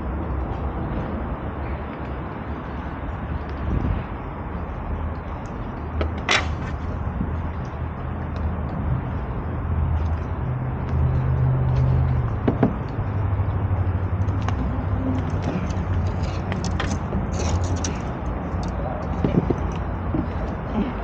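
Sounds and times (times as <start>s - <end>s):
wind: 0.0s - 21.0s
boat motor humming: 10.2s - 17.3s.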